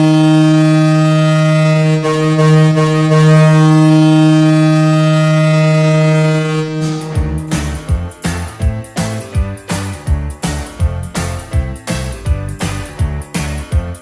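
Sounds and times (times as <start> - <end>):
goal horn blast: 0.0 - 8.7.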